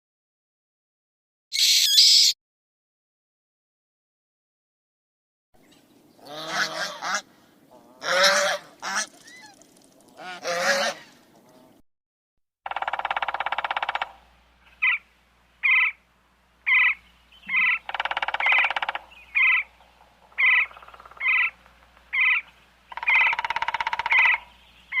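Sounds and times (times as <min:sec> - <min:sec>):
bird rattling call: 0:08.8 - 0:11.1, 0:12.7 - 0:14.2, 0:16.7 - 0:25.0.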